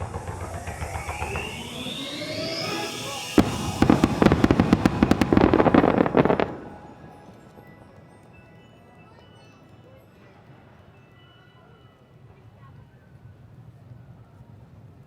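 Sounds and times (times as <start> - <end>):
firework bang: 0.0 - 7.3
fireworks crackling bursts: 0.0 - 7.7.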